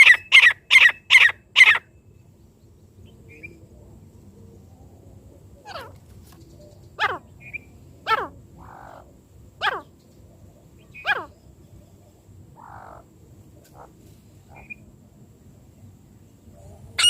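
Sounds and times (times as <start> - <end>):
francolin calling: 0.0 - 2.1, 5.5 - 10.0, 10.6 - 14.9.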